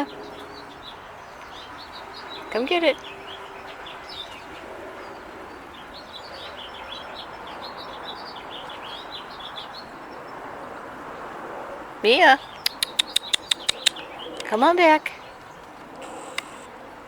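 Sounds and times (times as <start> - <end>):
small songbirds chirping: 0.0 - 11.3, 12.0 - 16.8.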